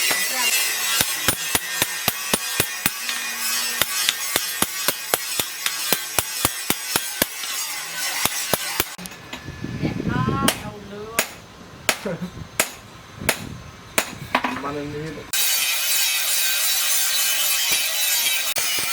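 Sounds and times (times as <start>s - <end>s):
hammer striking steel on anvil: 0.0s - 9.0s, 10.5s - 14.5s, 17.4s - 18.9s.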